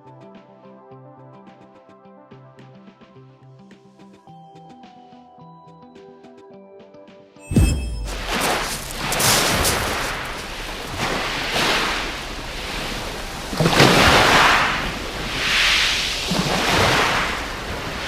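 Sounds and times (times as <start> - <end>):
waves breaking on beach: 7.6 - 18.0
wind rumbling on microphone: 7.6 - 18.0.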